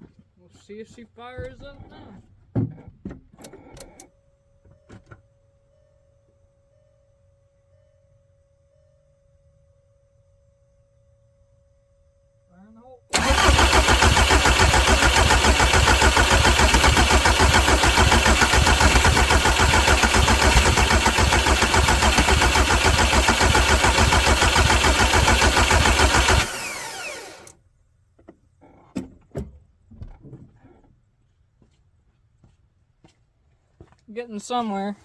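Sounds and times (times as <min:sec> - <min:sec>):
diesel engine cranking: 0:13.1 - 0:27.5.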